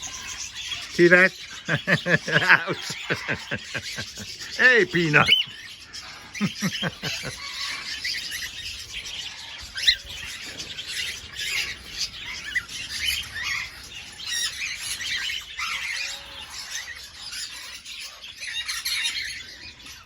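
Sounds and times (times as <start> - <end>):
cockatiels chirping and squawking: 5.3 - 20.0.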